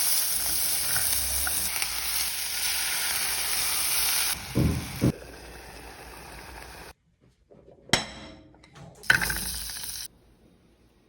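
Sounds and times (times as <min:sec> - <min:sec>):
frying sizzle: 0:00.0 - 0:06.9, 0:09.0 - 0:10.1.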